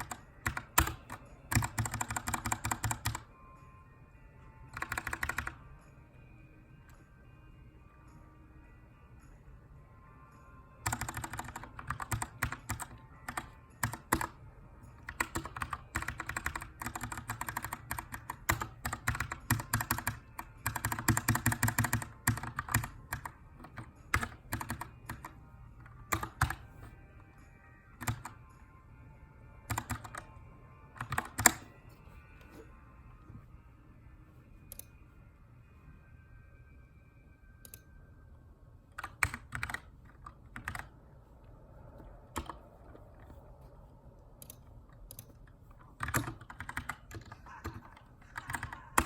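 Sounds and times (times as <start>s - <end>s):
typing on mechanical keyboard: 0.0s - 3.3s, 4.7s - 5.6s, 10.8s - 14.4s, 15.0s - 26.7s, 28.0s - 28.4s, 29.7s - 30.3s, 31.0s - 31.6s, 39.0s - 40.9s, 42.3s - 43.4s, 44.4s - 49.0s.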